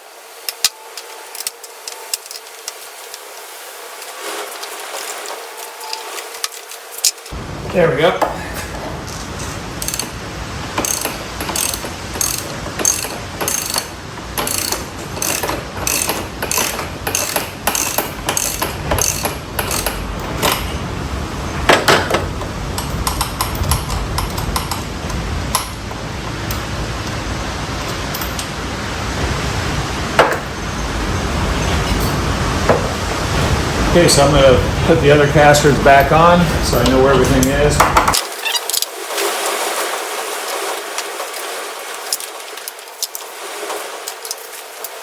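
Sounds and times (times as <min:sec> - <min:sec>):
ratchet wrench clicking: 0:09.8 - 0:10.2, 0:10.8 - 0:20.6.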